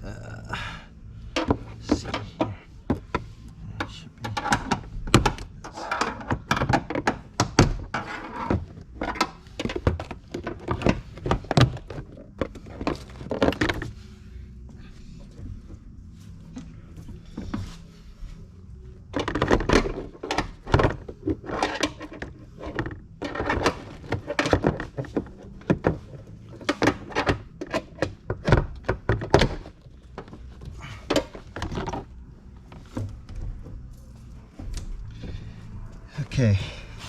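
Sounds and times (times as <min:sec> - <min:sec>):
hard plastic knocks and rattles: 0:01.4 - 0:14.0, 0:19.1 - 0:33.9.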